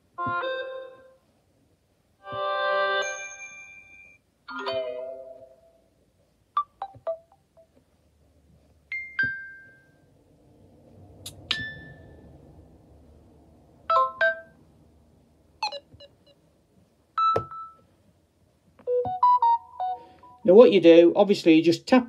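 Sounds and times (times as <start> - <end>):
phone notification tones: 6.6 - 7.7, 13.9 - 14.6, 15.6 - 16.4, 17.2 - 17.9, 18.8 - 20.5.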